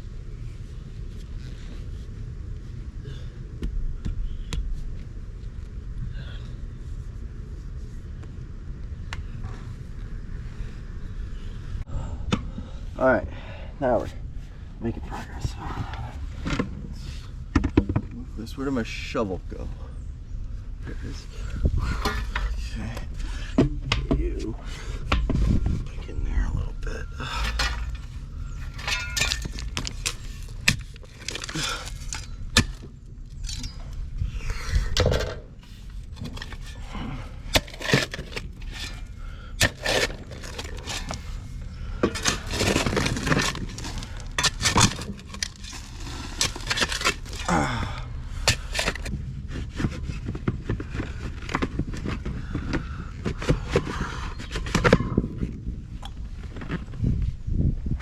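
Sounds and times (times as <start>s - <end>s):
steady low rumble: 0.0s - 58.0s
shovel scraping dirt and stones: 21.1s - 23.2s, 27.2s - 33.9s, 34.5s - 49.2s.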